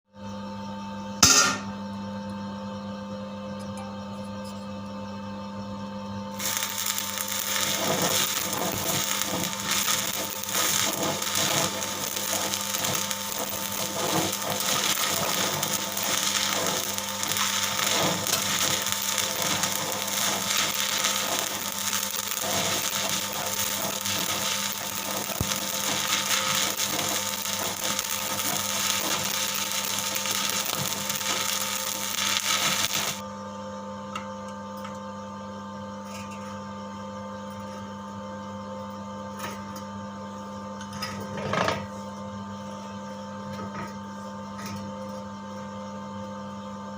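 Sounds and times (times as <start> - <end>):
welder low hum: 6.2 - 33.3
welding arc crackling and sizzling: 6.3 - 33.2.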